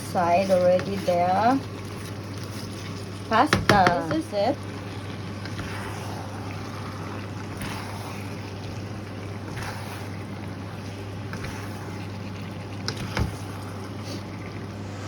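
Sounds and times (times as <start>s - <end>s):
food cooking in a pan: 0.0s - 15.0s
utensil knocking in a pan: 3.4s - 4.3s.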